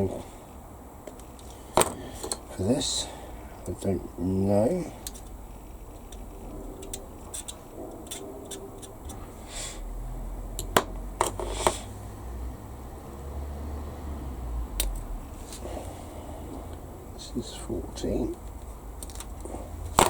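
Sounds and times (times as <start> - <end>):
sharp plastic snaps: 14.8 - 15.1
plastic parts clicking and tapping: 18.4 - 20.0.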